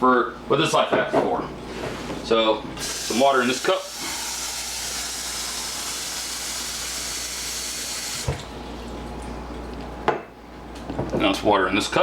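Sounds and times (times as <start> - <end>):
tap running water into cup: 2.8 - 8.5.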